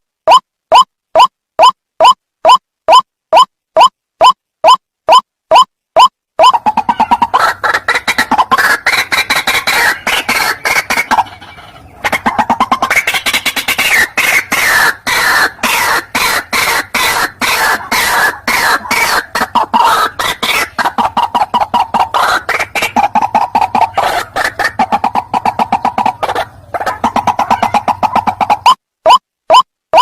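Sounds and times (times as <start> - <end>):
waterhen harsh clucking calls: 0.3 - 30.0.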